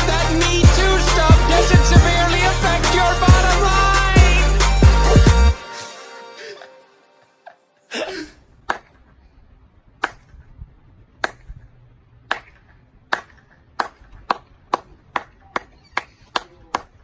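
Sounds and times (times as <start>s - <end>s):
slow hand claps: 11.2s - 11.4s, 12.3s - 16.9s.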